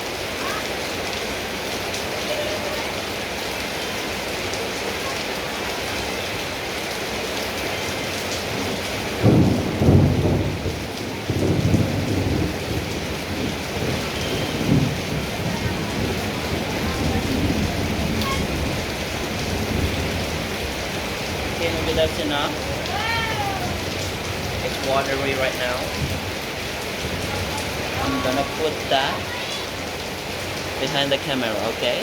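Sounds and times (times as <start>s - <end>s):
steady rain falling: 0.0s - 32.0s
thunder rumbling: 8.4s - 32.0s.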